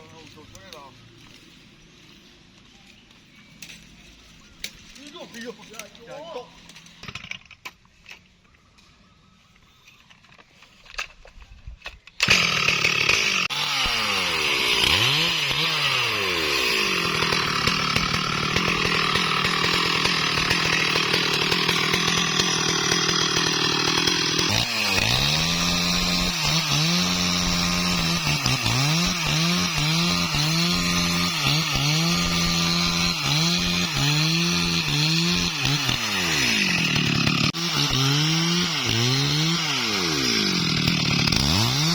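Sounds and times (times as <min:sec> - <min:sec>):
chainsaw revving: 0:12.2 - 0:41.9.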